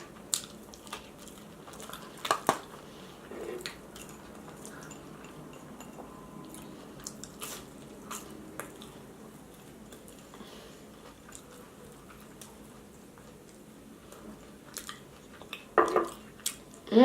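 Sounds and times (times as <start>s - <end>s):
chewing and biting food: 0.0s - 2.7s, 6.4s - 16.8s.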